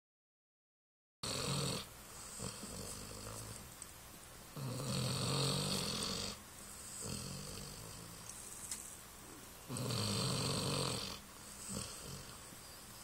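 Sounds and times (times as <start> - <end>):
person snoring: 1.2 - 3.6, 4.6 - 8.2, 9.7 - 12.4
quiet breathing: 1.8 - 3.7, 4.5 - 13.0.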